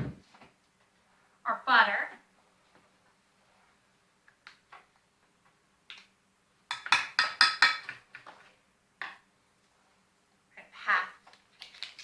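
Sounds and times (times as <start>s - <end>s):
kitchen utensils clinking: 6.7s - 8.2s.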